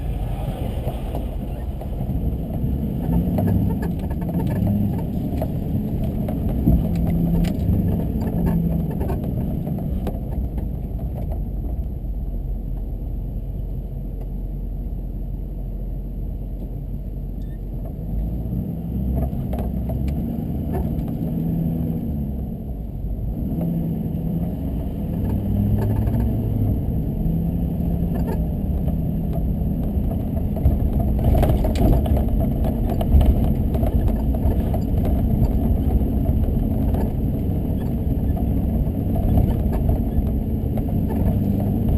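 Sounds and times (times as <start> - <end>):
road noise rumble: 0.0 - 41.9.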